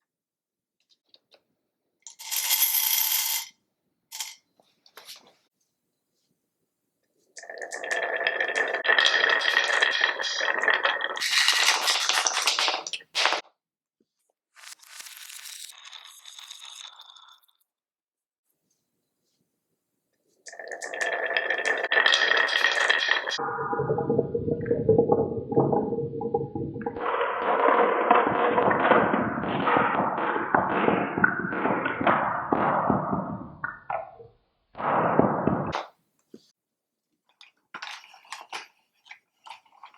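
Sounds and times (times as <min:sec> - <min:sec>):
marbles rolling and clattering: 0:25.6 - 0:33.9.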